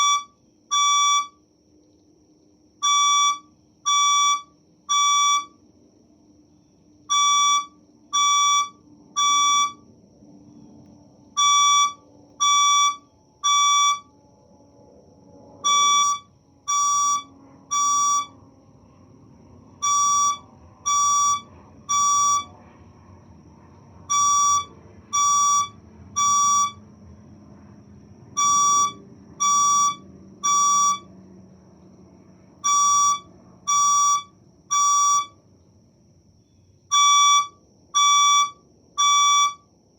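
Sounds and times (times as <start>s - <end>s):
fire alarm beeps: 0.0s - 1.4s, 2.8s - 5.6s, 7.0s - 9.9s, 11.3s - 14.1s, 15.6s - 18.4s, 19.8s - 22.6s, 24.0s - 26.8s, 28.3s - 31.1s, 32.6s - 35.4s, 36.9s - 39.7s
faint high whine: 0.0s - 39.9s.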